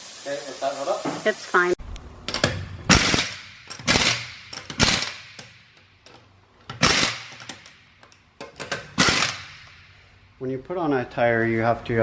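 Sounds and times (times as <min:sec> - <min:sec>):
impact gun rattling: 0:02.3 - 0:09.9.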